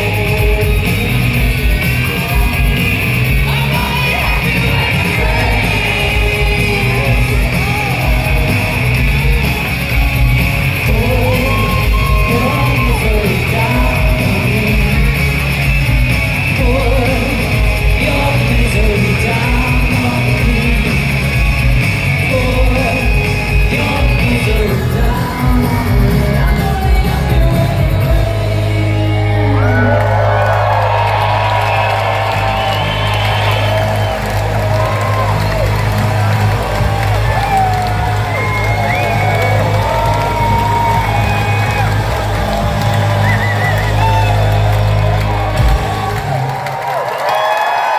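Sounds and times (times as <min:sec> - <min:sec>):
lead vocal singing: 0:00.0 - 0:33.1
live rock band: 0:00.0 - 0:47.9.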